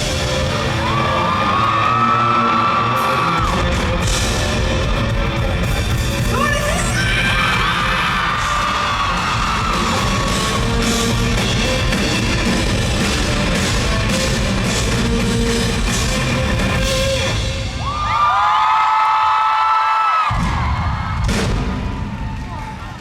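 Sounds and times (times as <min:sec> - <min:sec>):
rock band playing live: 0:00.0 - 0:17.9
crowd cheering: 0:00.0 - 0:23.0
fans screaming: 0:00.0 - 0:23.0.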